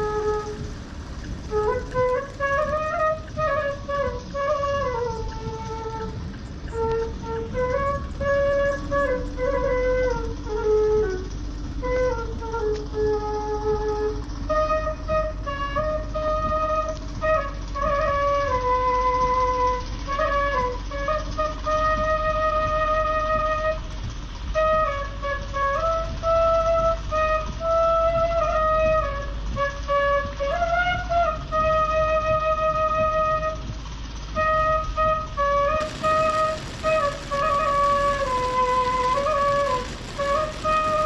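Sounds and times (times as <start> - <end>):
steady low rumble: 0.0 - 25.2, 35.8 - 41.0
bamboo flute melody: 0.0 - 41.0.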